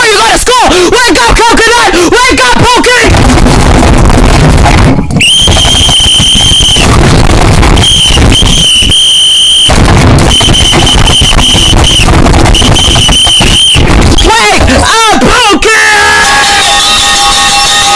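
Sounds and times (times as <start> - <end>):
harsh distorted rumble: 3.0 - 8.9, 9.6 - 15.0
shrill high-pitched alarm tone: 5.2 - 7.0, 7.7 - 14.3, 16.1 - 17.9.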